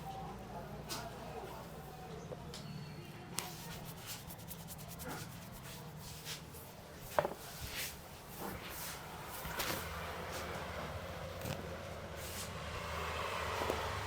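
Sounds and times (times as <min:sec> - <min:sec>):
hands rubbing skin: 0:03.4 - 0:06.5.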